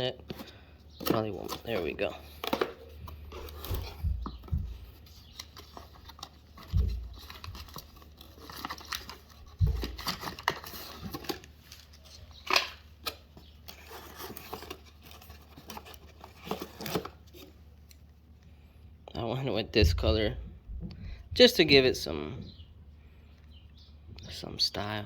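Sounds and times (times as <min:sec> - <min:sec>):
dull thumps: 0:03.6 - 0:05.0, 0:19.8 - 0:22.6
packaging tearing and crinkling: 0:05.1 - 0:17.5.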